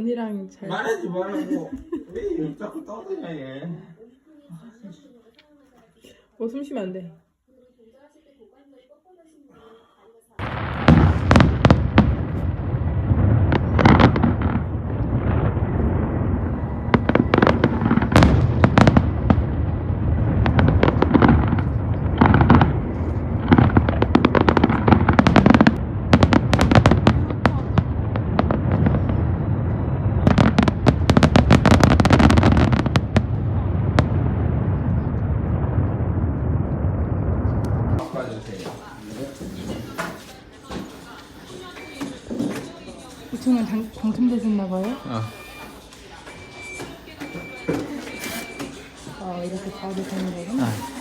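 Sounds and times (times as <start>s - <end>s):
low rumble: 10.4s - 38.0s
fireworks bangs and crackles: 10.4s - 51.0s.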